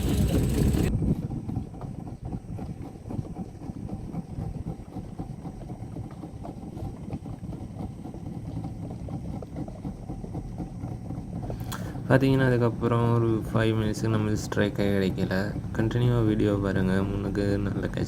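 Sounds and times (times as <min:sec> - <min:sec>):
outboard motor rumbling: 0:00.0 - 0:18.0
wind on microphone: 0:00.0 - 0:18.0.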